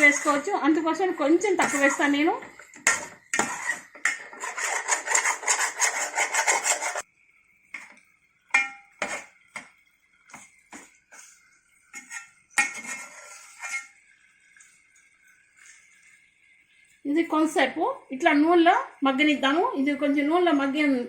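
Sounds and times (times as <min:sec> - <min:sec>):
spoon scraping metal pot: 0:00.0 - 0:00.6, 0:01.4 - 0:07.1, 0:08.5 - 0:09.7, 0:10.3 - 0:14.1
spoon knocking against pot: 0:08.5 - 0:09.7.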